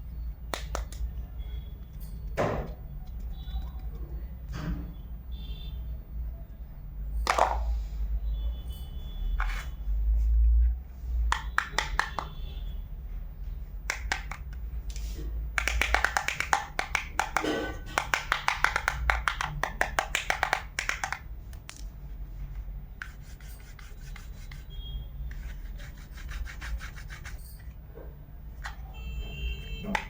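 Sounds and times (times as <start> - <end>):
toy utensils scraping and rubbing: 9.4 - 9.8, 15.0 - 21.2, 23.0 - 27.8.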